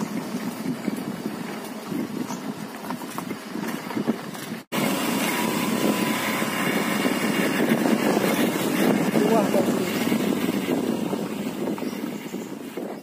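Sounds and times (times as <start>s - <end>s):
vehicle engine running: 4.7s - 12.8s.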